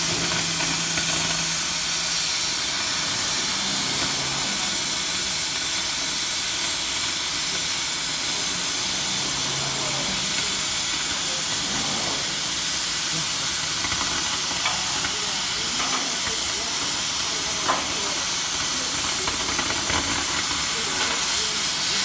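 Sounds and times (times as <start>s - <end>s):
cutting torch hissing: 0.0s - 22.0s.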